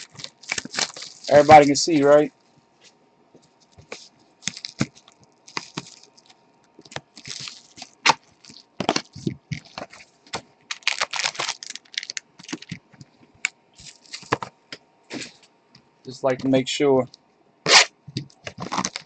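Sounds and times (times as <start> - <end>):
packaging crinkling: 0.0 - 2.2, 3.8 - 12.9, 13.8 - 14.5, 17.7 - 19.0.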